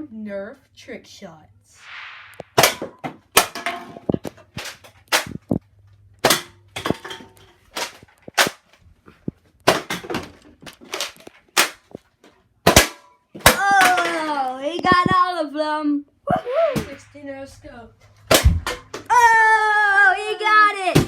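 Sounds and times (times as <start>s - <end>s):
foam darts striking targets: 2.3s - 3.9s, 12.7s - 14.0s, 18.3s - 19.1s.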